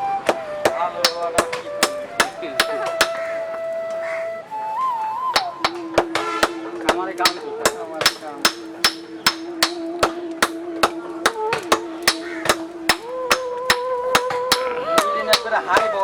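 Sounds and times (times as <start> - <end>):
background music: 0.0 - 16.0
hammer ringing on anvil: 5.7 - 10.6.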